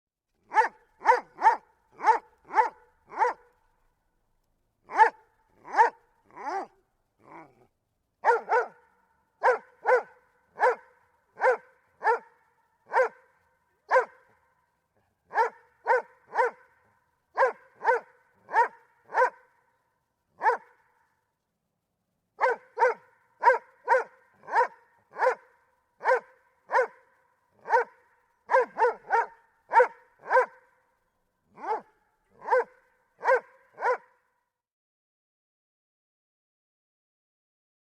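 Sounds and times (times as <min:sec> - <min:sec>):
dog barking: 0:00.4 - 0:03.6, 0:04.8 - 0:19.8, 0:20.4 - 0:21.2, 0:22.4 - 0:30.9, 0:31.5 - 0:34.4.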